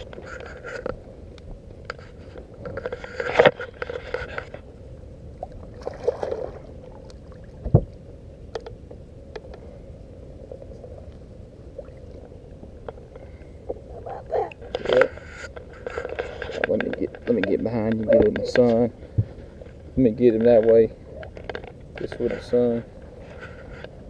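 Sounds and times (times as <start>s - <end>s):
light clicks and rustles: 0.0s - 4.7s, 14.4s - 24.0s
faint steady hum: 0.0s - 24.0s.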